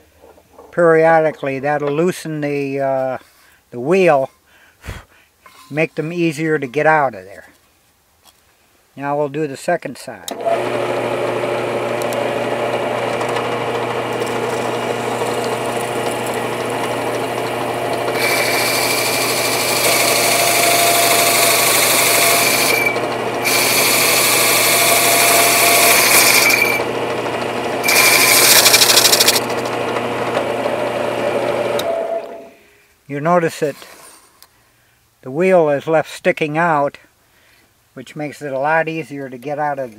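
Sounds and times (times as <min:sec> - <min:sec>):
drill press motor running: 0:10.3 - 0:32.5
hole saw cutting wood: 0:10.3 - 0:32.5.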